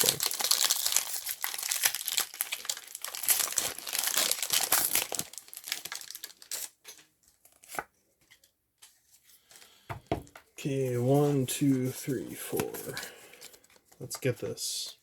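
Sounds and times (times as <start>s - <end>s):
foil wrappers crinkling and tearing: 0.0s - 7.8s.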